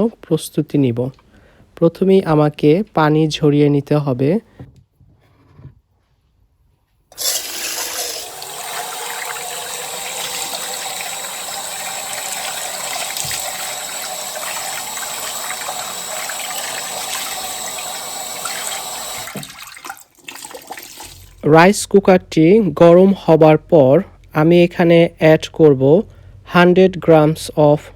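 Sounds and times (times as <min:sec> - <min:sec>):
water pouring: 0:07.1 - 0:21.4.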